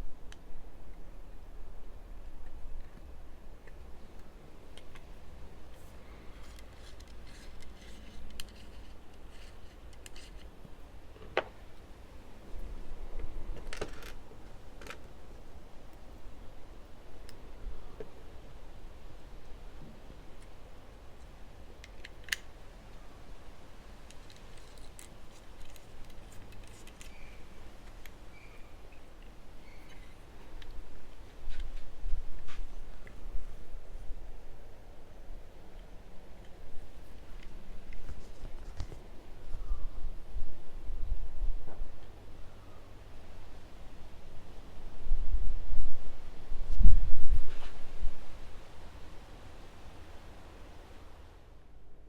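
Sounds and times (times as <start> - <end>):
small objects clicking and rustling: 6.3 - 10.5, 13.5 - 15.2, 24.0 - 28.6.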